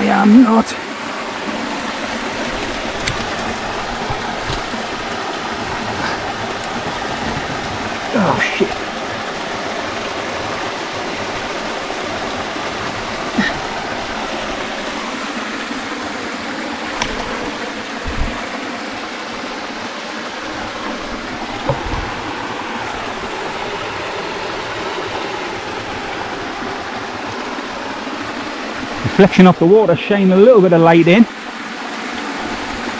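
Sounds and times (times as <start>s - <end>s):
shallow stream running: 0.0s - 32.9s
handling knocks: 5.8s - 8.0s, 16.9s - 18.5s, 21.4s - 22.3s.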